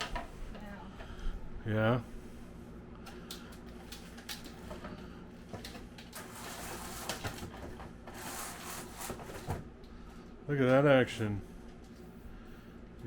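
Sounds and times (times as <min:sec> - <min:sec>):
blind rustling: 0:06.0 - 0:09.6.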